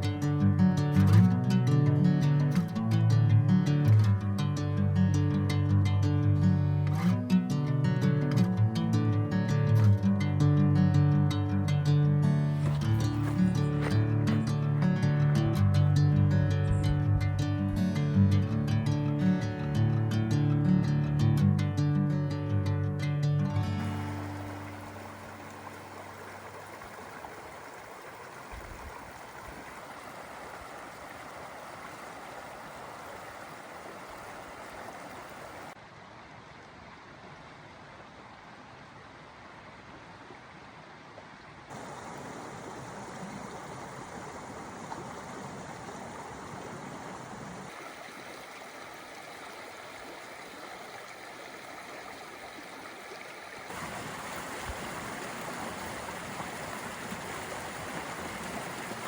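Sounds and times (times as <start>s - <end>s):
stream water rushing and gurgling: 0.0s - 21.0s, 23.5s - 59.0s.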